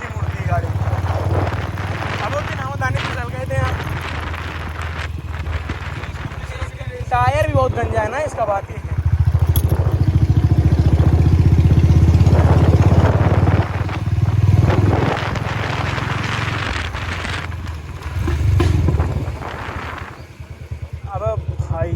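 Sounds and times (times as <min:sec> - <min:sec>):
motorcycle engine thumping: 0:00.0 - 0:21.9.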